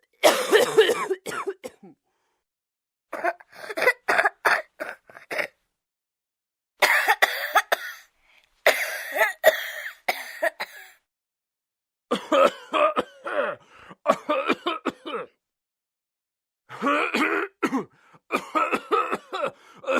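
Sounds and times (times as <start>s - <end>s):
person coughing: 0.2s - 2.0s, 3.2s - 5.6s, 6.8s - 8.1s, 8.7s - 11.0s, 12.1s - 15.4s, 16.7s - 19.9s.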